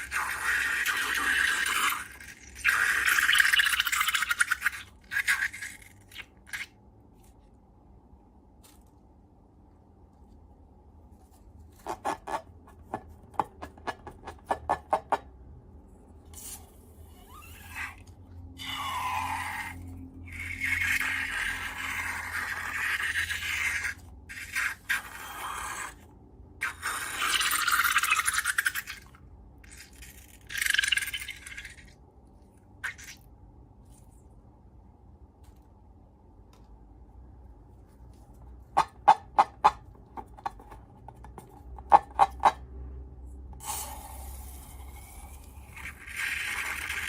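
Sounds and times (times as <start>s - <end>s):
scraping and rubbing of balloons: 11.1s - 13.3s.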